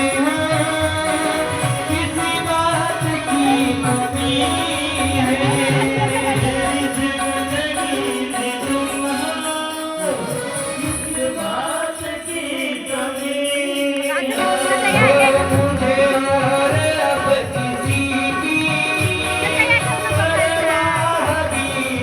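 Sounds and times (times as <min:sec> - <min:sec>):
hand percussion: 0:00.0 - 0:22.0
instrumental accompaniment: 0:00.0 - 0:22.0
person singing: 0:00.0 - 0:22.0.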